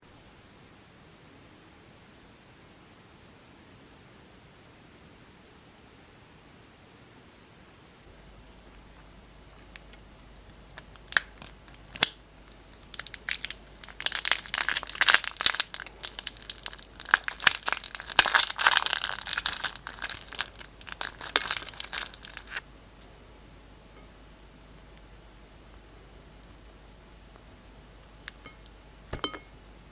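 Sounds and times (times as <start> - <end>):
slime crinkling and crackling: 9.4 - 22.6.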